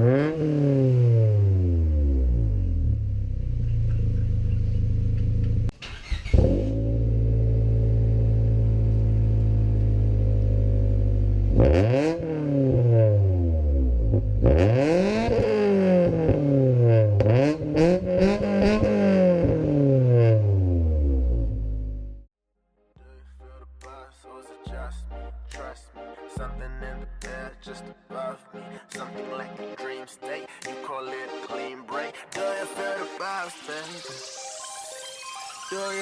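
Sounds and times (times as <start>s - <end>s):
car engine idling and revving: 0.0s - 22.3s.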